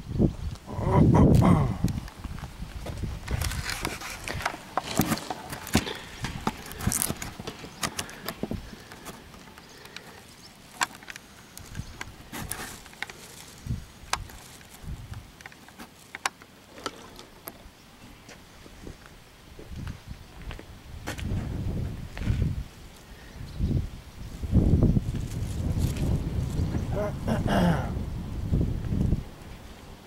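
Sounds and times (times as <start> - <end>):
handling rustling: 2.1 - 17.6.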